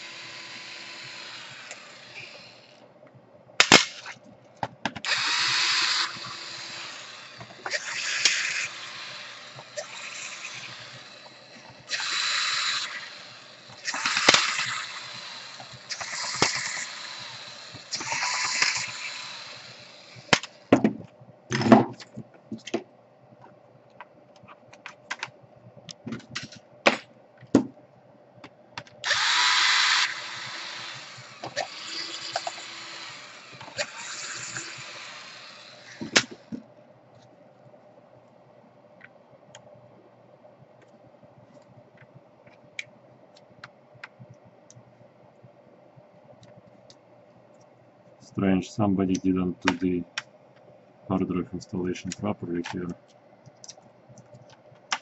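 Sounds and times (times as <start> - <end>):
electric screwdriver running: 0.0 - 2.8, 5.1 - 20.3, 29.0 - 36.1.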